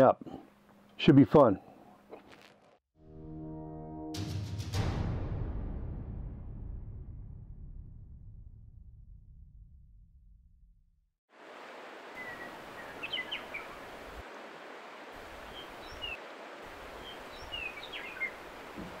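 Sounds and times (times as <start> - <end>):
outdoor background hiss: 11.3 - 19.0
small birds chirping: 12.0 - 14.2, 15.2 - 19.0.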